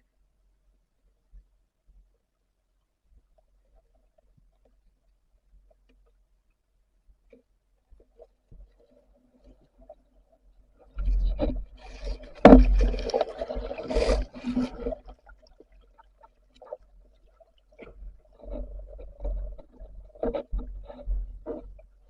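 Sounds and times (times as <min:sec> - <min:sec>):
underwater knocks: 0:11.1 - 0:15.3.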